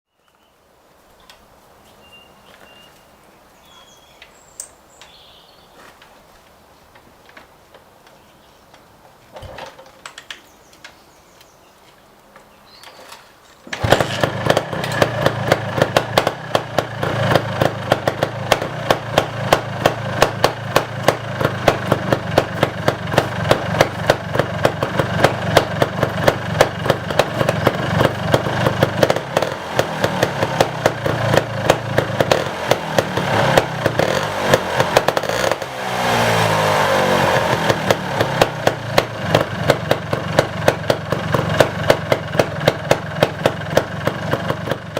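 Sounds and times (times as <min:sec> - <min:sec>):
motorcycle engine starting and idling: 0:13.0 - 0:44.9.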